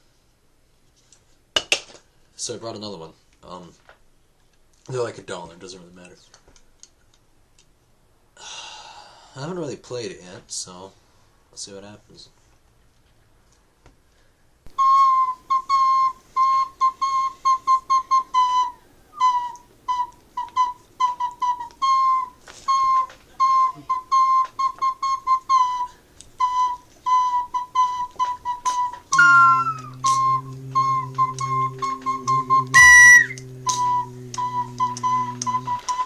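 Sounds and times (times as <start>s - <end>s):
plastic slide whistle toots: 14.7s - 36.0s.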